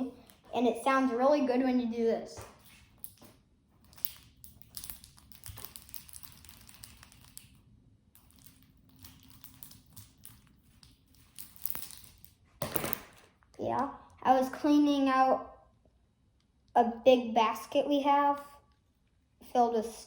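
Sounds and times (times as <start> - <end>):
plastic chain links clicking: 3.9 - 7.5.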